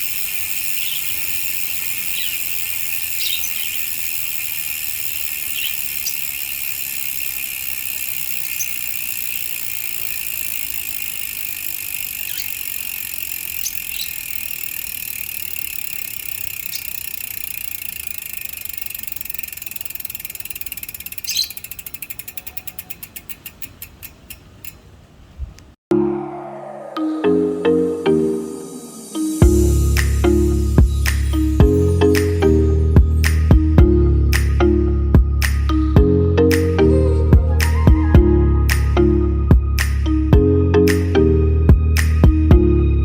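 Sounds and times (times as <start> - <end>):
bicycle hub ratcheting: 0.0 - 24.9.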